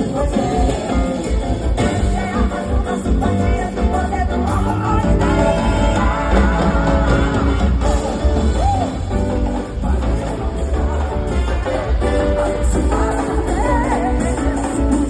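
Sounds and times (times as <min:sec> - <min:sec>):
live band music: 0:00.0 - 0:15.0
woman singing: 0:00.0 - 0:15.0.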